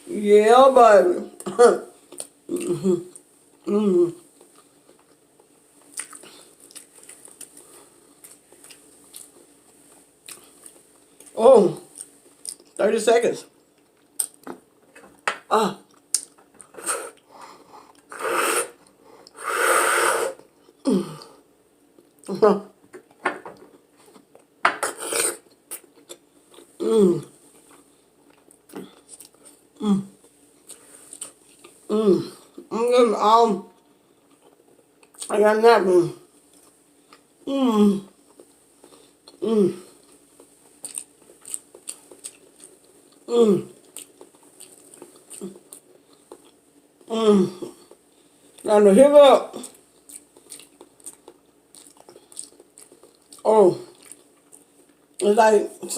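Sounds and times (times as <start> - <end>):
person chewing food: 2.0 - 12.8, 13.6 - 15.2, 15.8 - 19.4, 23.0 - 32.7, 33.8 - 35.3, 36.4 - 37.4, 38.1 - 48.6, 49.6 - 55.2
muffled grunt: 2.5 - 3.1, 3.7 - 4.2, 26.8 - 27.3, 29.8 - 30.2, 31.9 - 32.9, 39.4 - 39.9, 43.3 - 43.8, 47.1 - 47.9.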